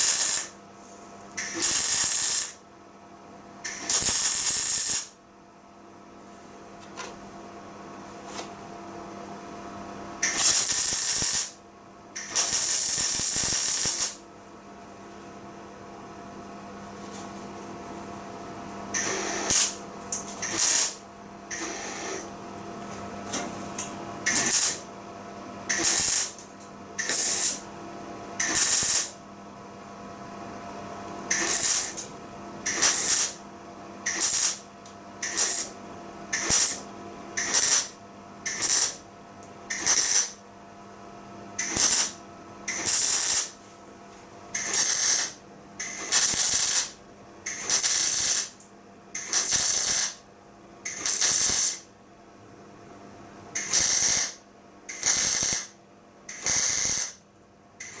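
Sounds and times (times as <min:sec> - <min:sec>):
welder crackling hiss: 0:00.0 - 0:00.6, 0:01.4 - 0:02.6, 0:03.7 - 0:05.2, 0:10.2 - 0:11.6, 0:12.2 - 0:14.2, 0:19.0 - 0:19.8, 0:20.4 - 0:22.2, 0:24.3 - 0:24.8, 0:25.7 - 0:26.4, 0:27.0 - 0:27.6, 0:28.4 - 0:29.2, 0:31.3 - 0:32.0, 0:32.7 - 0:33.4, 0:34.1 - 0:34.6, 0:35.2 - 0:35.7, 0:36.4 - 0:36.8, 0:37.4 - 0:39.0, 0:39.7 - 0:40.4, 0:41.6 - 0:43.6, 0:44.6 - 0:48.6, 0:49.2 - 0:50.2, 0:50.9 - 0:51.9, 0:53.6 - 0:57.2
steady hum: 0:00.0 - 0:58.0.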